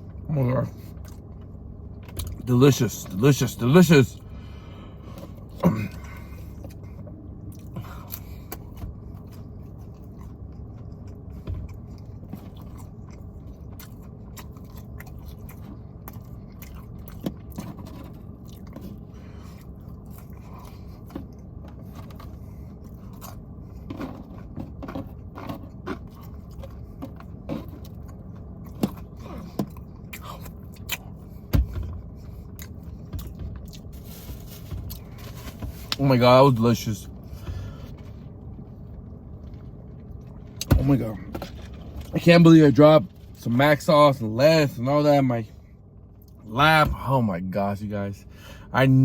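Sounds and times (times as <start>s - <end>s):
low hum: 0.0s - 48.9s
person chewing food: 5.0s - 35.4s.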